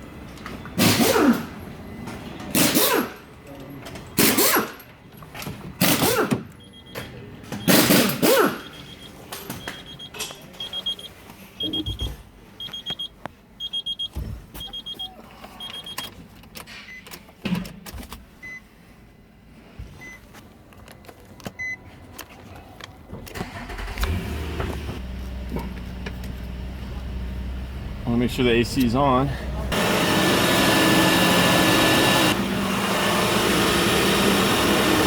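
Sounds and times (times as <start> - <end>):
car warning chime beeping: 8.6 - 16.1.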